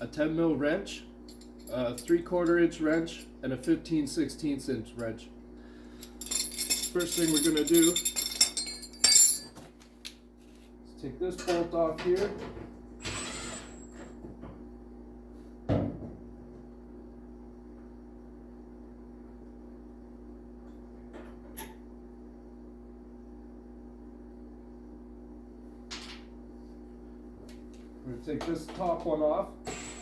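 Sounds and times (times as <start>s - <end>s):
steady low hum: 0.0s - 12.0s, 22.0s - 30.0s.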